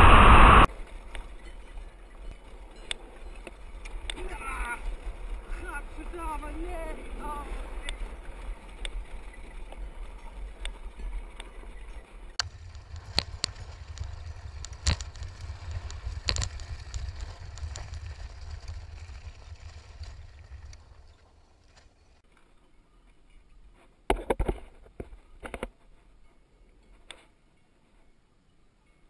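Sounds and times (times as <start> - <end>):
wind buffeting microphone: 1.3 - 21.7
sharp knocks and rattles: 12.4 - 22.2.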